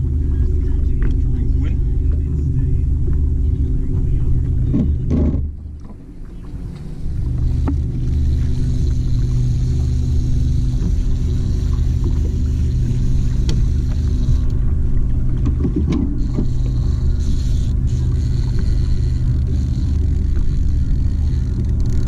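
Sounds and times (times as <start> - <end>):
outboard motor droning: 0.0 - 22.0.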